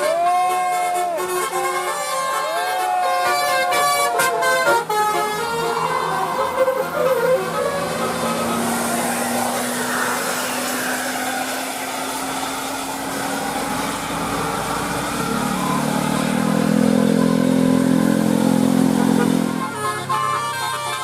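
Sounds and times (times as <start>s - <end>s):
bus engine humming: 0.0s - 21.0s
rain hissing on wet road: 6.1s - 19.6s.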